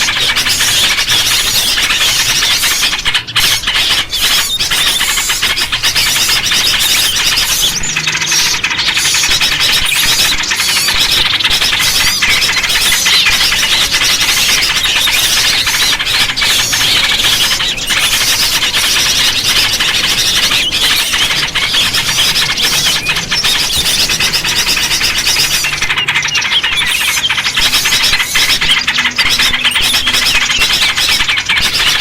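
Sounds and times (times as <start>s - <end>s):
small birds chirping: 0.0s - 32.0s.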